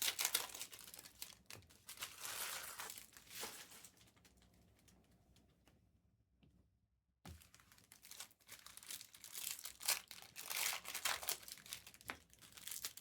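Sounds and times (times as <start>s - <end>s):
plastic wrapping crinkling and tearing: 0.0s - 4.2s, 7.3s - 13.0s.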